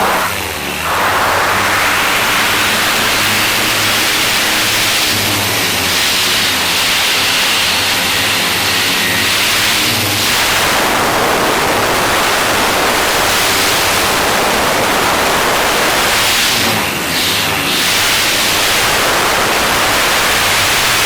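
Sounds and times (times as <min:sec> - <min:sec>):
low hum: 0:00.0 - 0:03.6
drone propellers whirring: 0:00.0 - 0:21.0
wind: 0:00.0 - 0:21.0.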